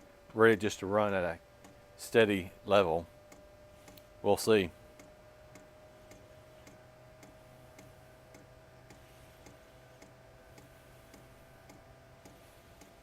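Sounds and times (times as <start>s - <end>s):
heater fan hum: 0.0s - 13.0s.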